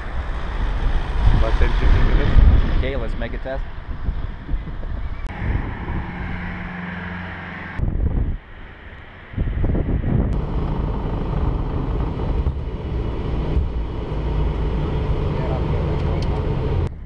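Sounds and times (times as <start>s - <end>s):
wind buffeting microphone: 0.0s - 17.0s
low machinery hum: 9.8s - 16.9s.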